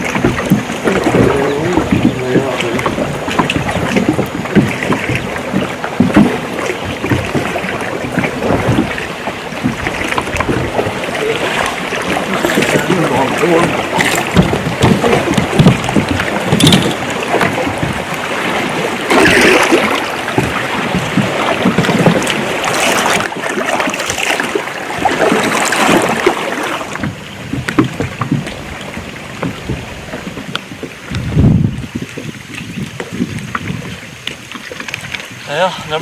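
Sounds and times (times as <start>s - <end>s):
water moving against kayak: 0.0s - 36.0s
wind buffeting microphone: 0.0s - 36.0s.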